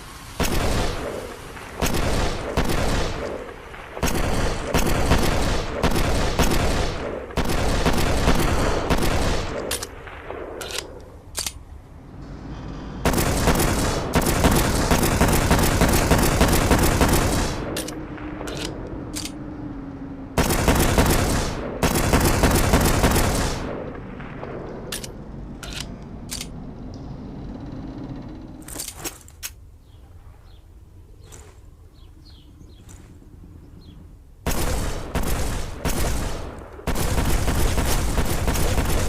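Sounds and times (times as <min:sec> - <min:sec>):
pistol rapid fire bursts: 0:00.4 - 0:09.7, 0:13.1 - 0:17.8, 0:20.4 - 0:23.9, 0:34.5 - 0:39.0.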